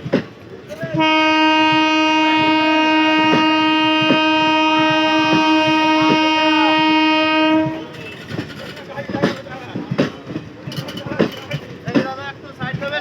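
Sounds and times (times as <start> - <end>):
train wheels knocking on rail joints: 0.0 - 13.0
train horn blast: 1.0 - 8.4.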